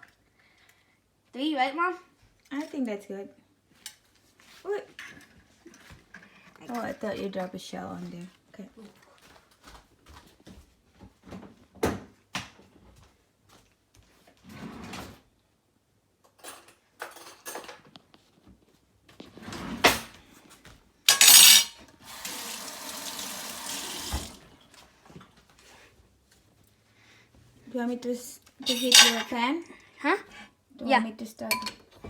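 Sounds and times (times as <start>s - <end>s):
dishes and utensils clinking: 16.4s - 17.8s, 21.1s - 21.8s, 28.6s - 29.4s
tap water running: 21.1s - 24.5s.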